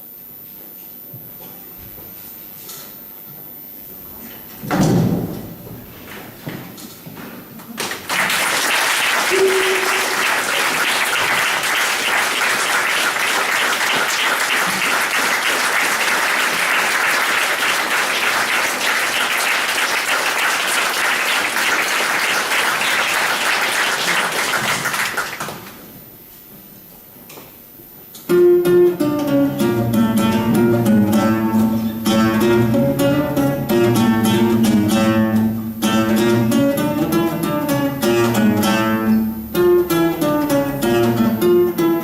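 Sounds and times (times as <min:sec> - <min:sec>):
audience applauding: 0:07.8 - 0:25.8.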